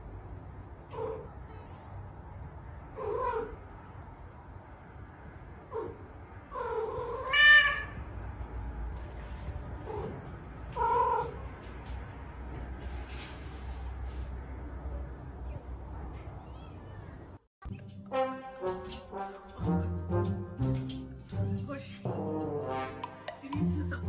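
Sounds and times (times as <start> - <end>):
cat meowing: 5.7 - 8.0, 9.9 - 11.5, 16.4 - 17.2.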